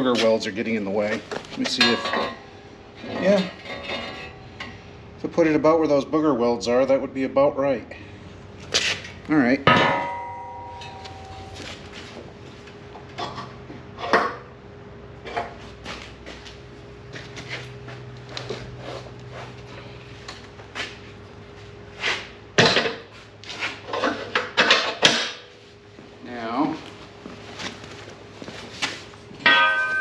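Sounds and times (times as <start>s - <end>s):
metal clanks and knocks: 1.7s - 2.4s, 9.7s - 11.9s, 29.4s - 30.0s.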